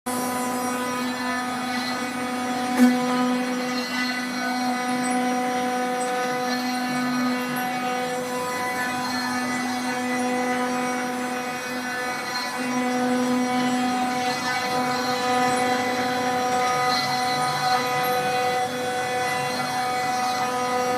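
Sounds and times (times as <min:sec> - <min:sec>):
machine motors whining: 0:00.1 - 0:20.9.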